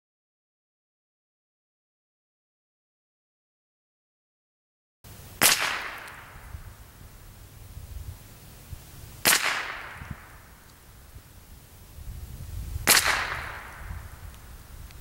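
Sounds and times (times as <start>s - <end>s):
rifle shots with echo: 5.4s - 6.5s, 9.2s - 10.5s, 12.8s - 14.1s.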